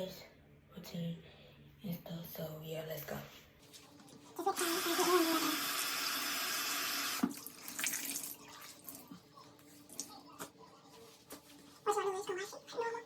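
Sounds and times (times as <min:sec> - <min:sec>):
sink tap running: 0:04.4 - 0:08.4.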